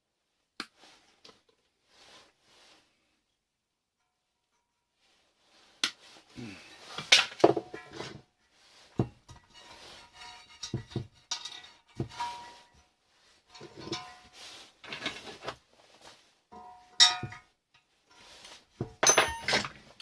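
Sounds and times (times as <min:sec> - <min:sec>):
metal scrap knocking together: 0:09.0 - 0:12.7, 0:13.5 - 0:15.5, 0:18.8 - 0:20.0.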